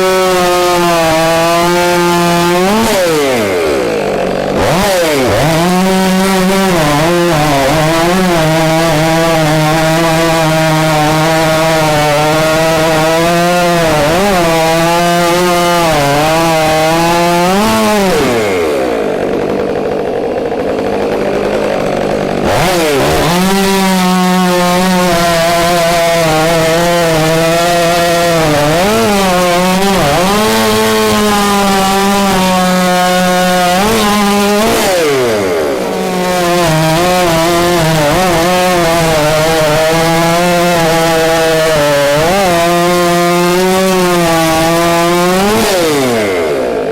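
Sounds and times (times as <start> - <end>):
chainsaw cutting logs: 0.0 - 46.9.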